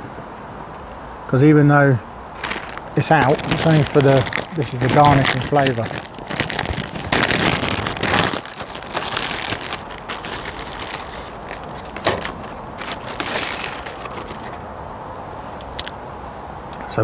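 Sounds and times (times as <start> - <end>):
herbs rustling and crinkling: 2.3 - 14.8, 15.6 - 15.9.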